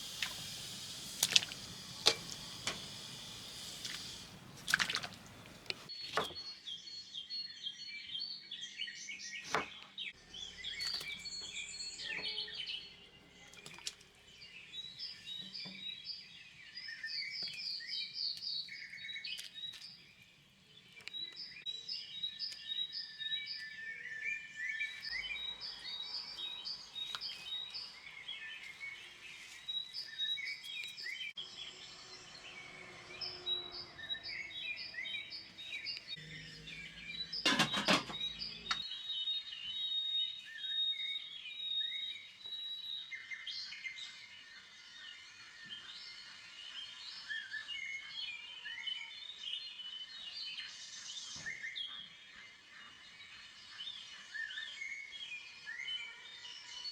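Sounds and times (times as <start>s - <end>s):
songbirds chirping and singing: 0.0s - 56.9s.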